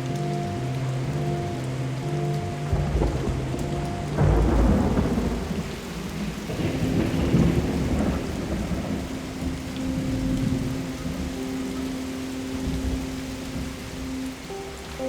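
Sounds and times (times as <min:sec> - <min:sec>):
electric piano notes: 0:00.0 - 0:15.0
heavy rain: 0:00.0 - 0:15.0
rolling thunder: 0:02.6 - 0:14.1.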